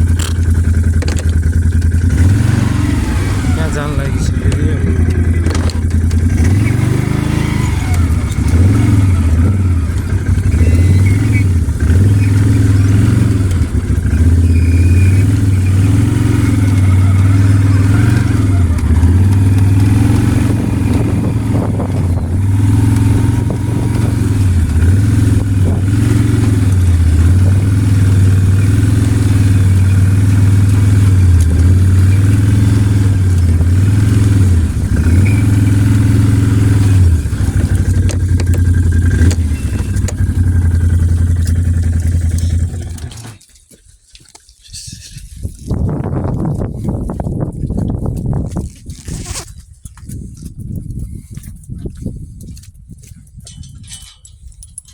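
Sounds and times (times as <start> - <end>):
small vehicle engine running: 0.0 - 43.5.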